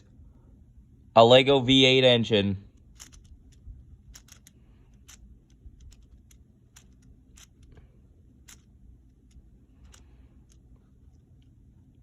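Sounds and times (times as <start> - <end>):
plastic parts clicking: 2.7 - 11.5.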